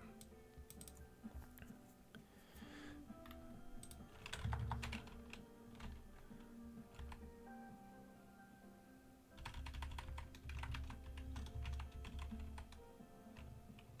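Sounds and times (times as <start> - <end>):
computer keyboard typing: 0.0 - 1.8, 3.2 - 7.3, 9.4 - 14.0
quiet background music: 0.0 - 14.0.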